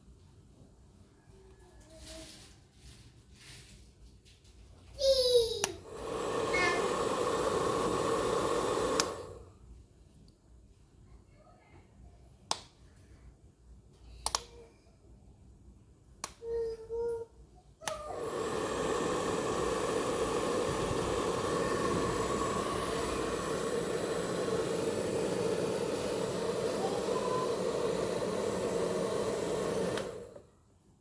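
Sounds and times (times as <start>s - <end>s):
hair dryer blowing: 5.6s - 9.5s, 17.9s - 30.5s.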